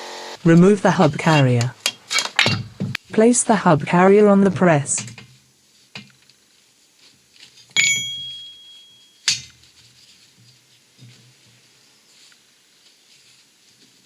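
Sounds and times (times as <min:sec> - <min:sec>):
metal clanks: 0:00.5 - 0:03.0, 0:05.0 - 0:05.3, 0:07.8 - 0:09.7.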